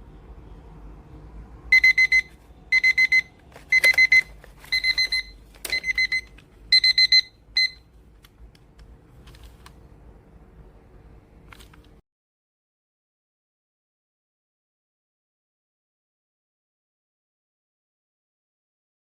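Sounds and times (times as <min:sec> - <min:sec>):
kitchen timer beeping: 0:01.7 - 0:07.9.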